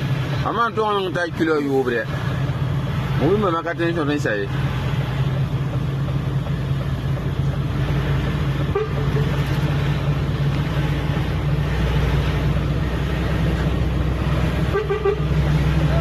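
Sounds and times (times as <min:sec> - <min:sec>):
heavy vehicle engines droning: 0:00.0 - 0:16.0
horn toot: 0:08.6 - 0:09.4, 0:14.6 - 0:16.0.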